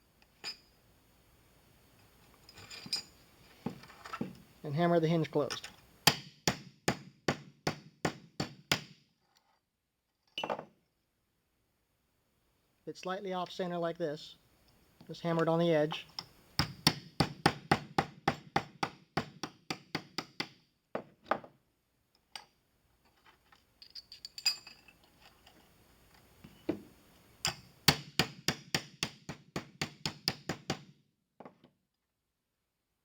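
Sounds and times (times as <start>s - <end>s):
light metal clinks: 23.8s - 25.7s.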